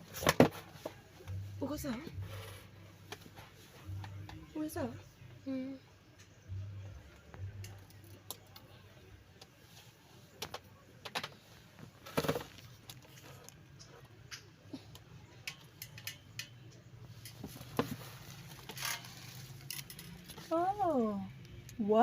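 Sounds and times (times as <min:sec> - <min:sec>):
faint low hum: 0:00.0 - 0:22.0
plastic parts clicking and knocking: 0:10.4 - 0:11.4, 0:12.0 - 0:14.5.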